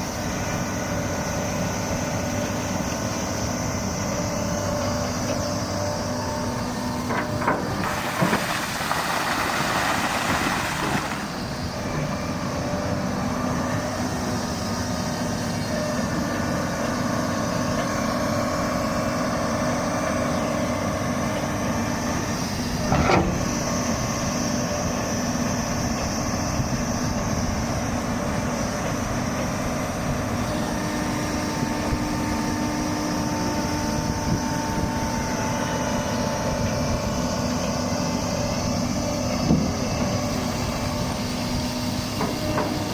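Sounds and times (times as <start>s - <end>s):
excavator engine droning: 0.0s - 42.9s.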